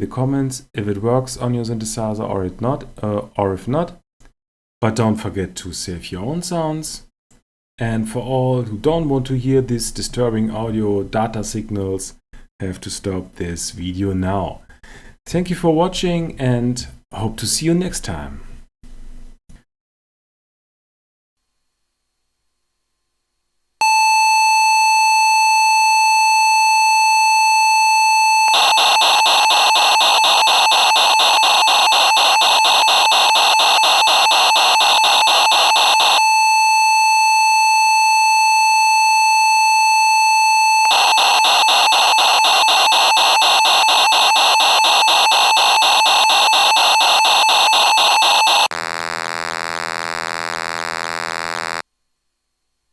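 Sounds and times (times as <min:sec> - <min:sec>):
steady high beep: 0:28.4 - 0:48.7
fast warbling data stream: 0:28.5 - 0:36.3, 0:40.8 - 0:48.7.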